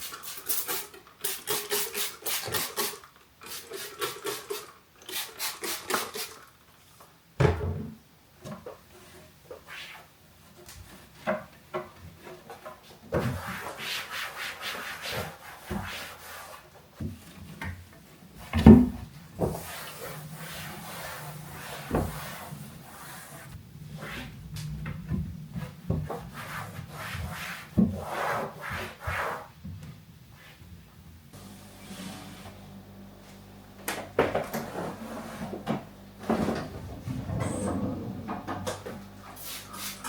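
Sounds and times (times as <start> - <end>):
surface scrubbed by hand: 19.5 - 24.8, 25.5 - 29.5, 31.8 - 32.6, 34.6 - 35.6, 39.2 - 40.0.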